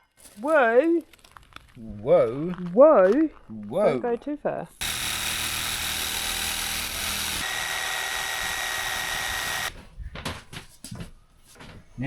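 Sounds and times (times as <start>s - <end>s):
power tool whining: 4.8s - 9.8s.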